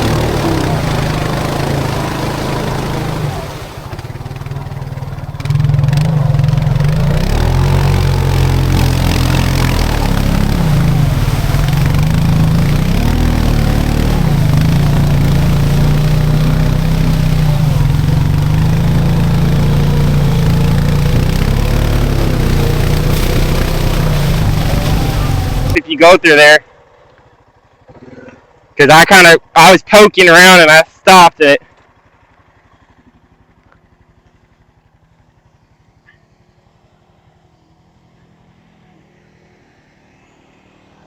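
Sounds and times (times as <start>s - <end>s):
atv engine revving: 0.0s - 26.0s.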